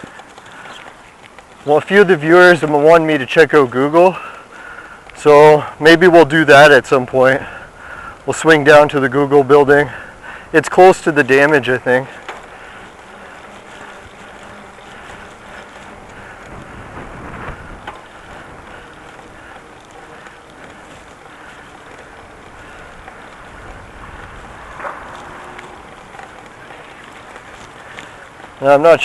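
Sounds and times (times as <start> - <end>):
bicycle bumps: 0.0 - 29.0
tyres rolling over pavement: 0.0 - 29.0
wind on microphone: 15.1 - 19.6, 22.4 - 27.7.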